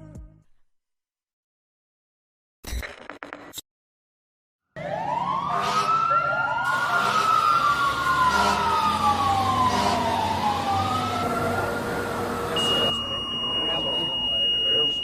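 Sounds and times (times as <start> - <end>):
wailing sirens: 4.7 - 15.0.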